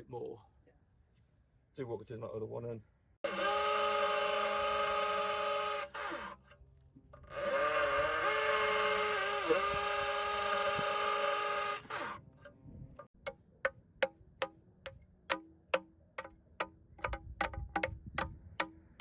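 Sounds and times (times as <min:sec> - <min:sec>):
small motor whining: 0:03.2 - 0:06.4, 0:07.2 - 0:12.2.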